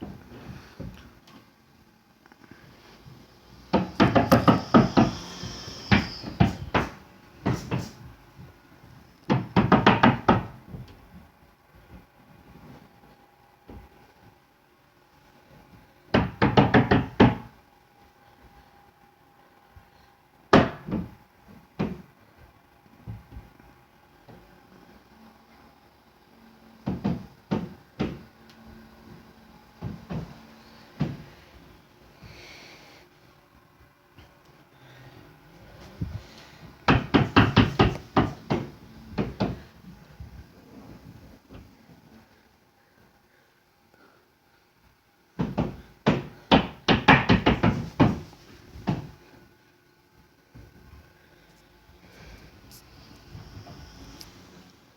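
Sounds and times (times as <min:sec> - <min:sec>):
loud banging knocks: 0:03.7 - 0:08.0, 0:09.3 - 0:10.9, 0:16.1 - 0:17.5, 0:36.9 - 0:39.7, 0:45.4 - 0:49.2.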